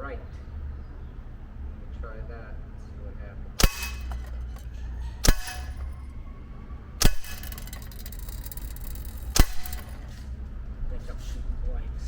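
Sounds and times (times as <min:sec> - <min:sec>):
bb gun shots: 0:03.6 - 0:05.9, 0:07.0 - 0:10.2.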